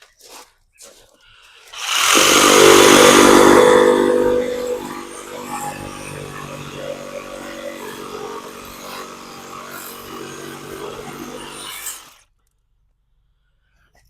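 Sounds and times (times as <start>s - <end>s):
motor running: 1.8s - 12.2s.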